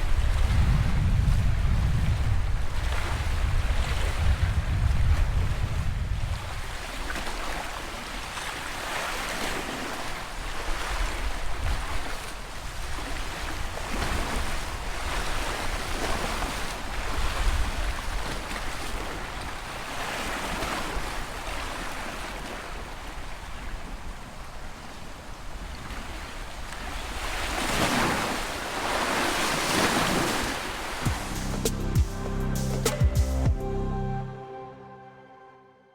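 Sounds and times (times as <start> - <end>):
wind rumbling on microphone: 0.0 - 7.6, 10.6 - 19.8
sea waves breaking: 6.4 - 31.6.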